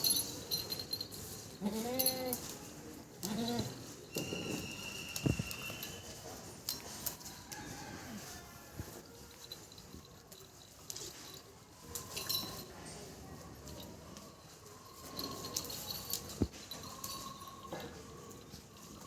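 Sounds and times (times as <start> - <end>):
goat bleating: 1.6 - 2.4, 3.2 - 3.8.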